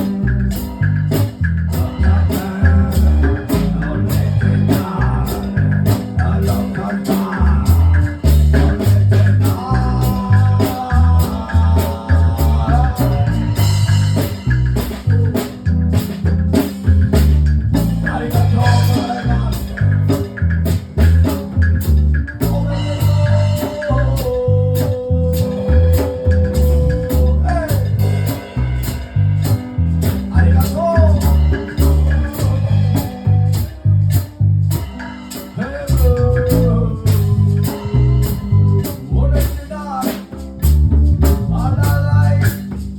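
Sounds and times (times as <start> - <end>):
bass: 0.0 - 42.9
drum kit: 0.0 - 42.9
guitar: 0.0 - 42.9
person singing: 1.7 - 14.3, 17.8 - 19.9, 22.3 - 28.4, 30.0 - 34.1, 35.4 - 40.4, 41.5 - 42.7.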